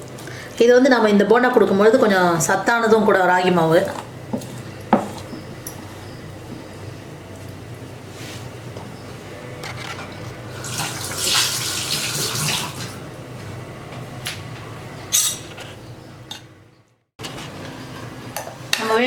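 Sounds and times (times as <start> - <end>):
water running from a tap: 10.6 - 13.0.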